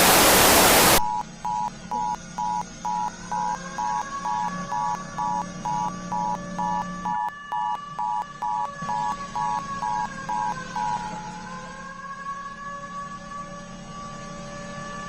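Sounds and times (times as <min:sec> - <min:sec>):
low hum: 0:00.0 - 0:11.8
electronic two-tone alert beeps: 0:01.0 - 0:11.0
siren wailing: 0:02.0 - 0:15.0.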